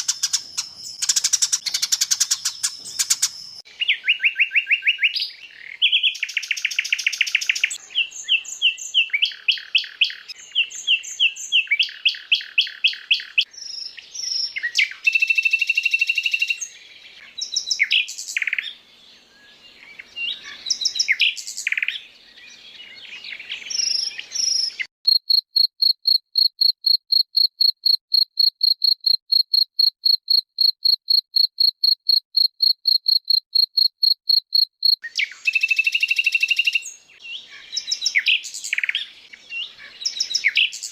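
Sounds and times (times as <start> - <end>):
high piping bird notes: 0.0 - 13.4
songbirds chirping and trilling: 0.0 - 24.9, 35.0 - 40.9.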